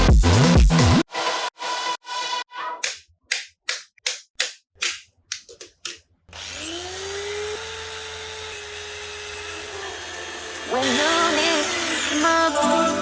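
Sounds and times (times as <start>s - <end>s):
power tool motor whining: 6.3s - 13.0s.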